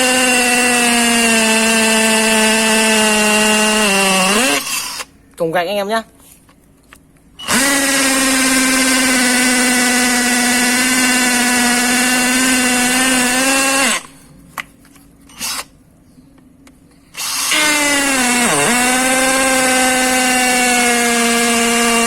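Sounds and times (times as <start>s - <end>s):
hammer drill whining: 0.0s - 5.1s, 7.4s - 14.1s, 15.3s - 15.7s, 17.2s - 22.0s.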